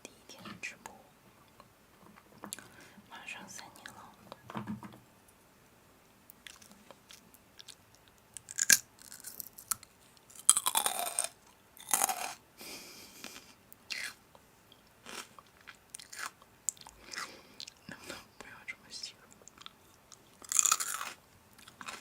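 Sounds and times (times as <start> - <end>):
crunching and chewing crisp food: 6.3 - 12.4, 13.0 - 17.8, 19.4 - 22.0.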